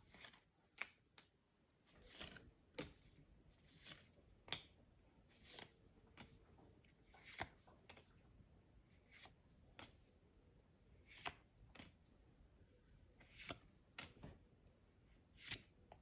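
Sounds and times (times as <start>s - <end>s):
trading cards swishing and tapping: 1.9s - 8.1s.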